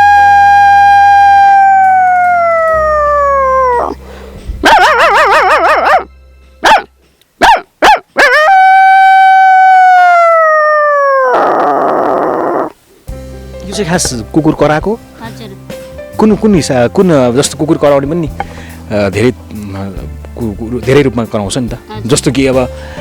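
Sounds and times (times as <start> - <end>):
woman howling like a dog: 0.0 - 4.0, 8.2 - 12.7
woman yipping: 0.7 - 4.0, 4.6 - 12.7.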